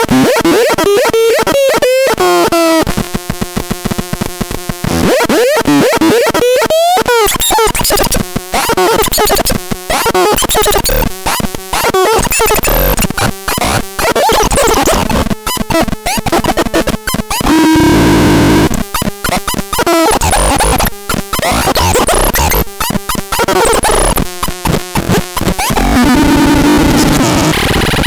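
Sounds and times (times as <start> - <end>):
glitchy stuttering electronic sounds: 7.1 - 28.0.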